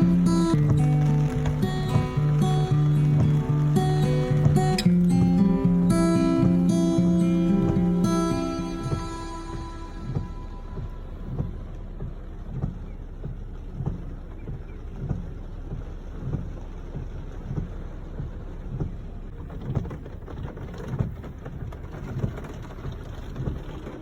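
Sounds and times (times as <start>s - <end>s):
low thump: 0.0s - 19.0s
low rumble: 0.0s - 20.4s
heavy rain and wind: 0.0s - 24.0s.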